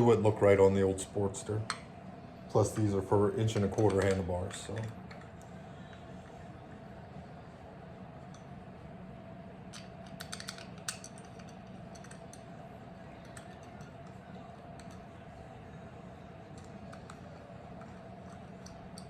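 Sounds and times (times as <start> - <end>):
steady background hum: 0.0 - 19.0
small metal parts clicking: 9.8 - 12.4.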